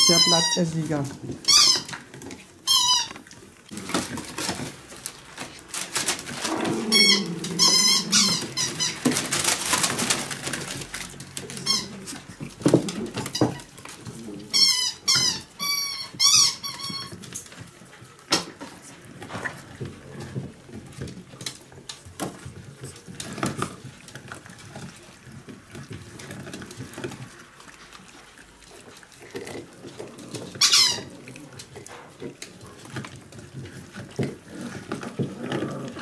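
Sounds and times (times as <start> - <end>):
puppy squeaking: 0.0 - 0.8, 1.4 - 2.0, 2.6 - 3.4, 6.9 - 9.0, 11.6 - 12.1, 14.5 - 17.2, 30.6 - 31.1
puppies chewing: 0.0 - 36.0.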